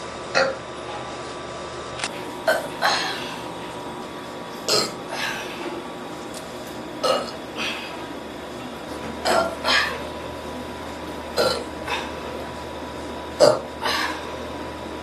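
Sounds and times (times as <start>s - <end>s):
woman burping: 0.3s - 0.6s, 4.7s - 5.0s, 7.0s - 7.4s, 9.2s - 10.0s, 11.4s - 11.7s, 13.4s - 14.2s.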